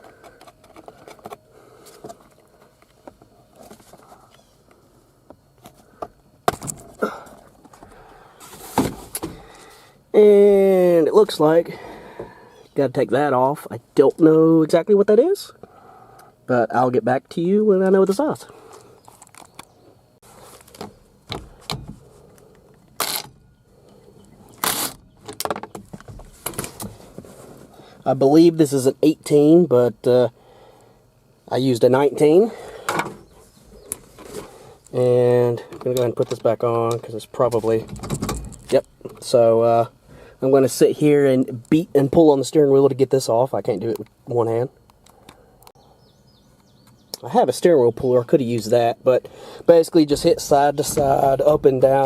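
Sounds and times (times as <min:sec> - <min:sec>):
handling clicks and rustle: 0:00.0 - 0:09.6.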